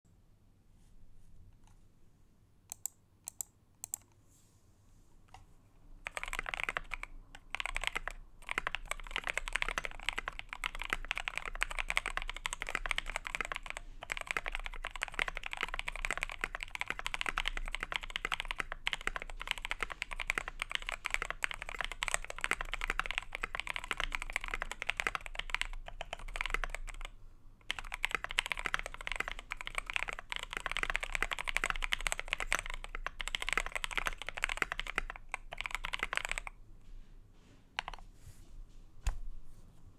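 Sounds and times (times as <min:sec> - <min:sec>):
fast mechanical keyboard typing: 0:06.0 - 0:36.6.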